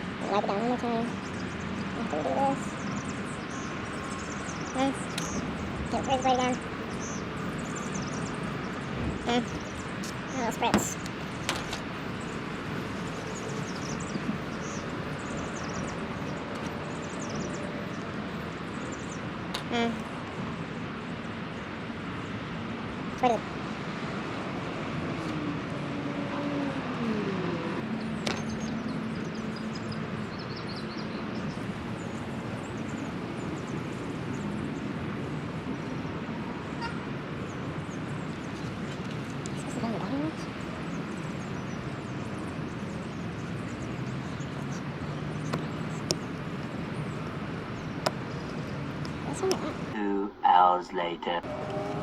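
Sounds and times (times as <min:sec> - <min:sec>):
small birds chirping: 0:00.0 - 0:23.4, 0:26.6 - 0:51.4
passing vehicle hum: 0:00.0 - 0:30.3, 0:38.7 - 0:52.0
distant traffic rumble: 0:00.0 - 0:52.0
bird chirps: 0:00.3 - 0:12.3.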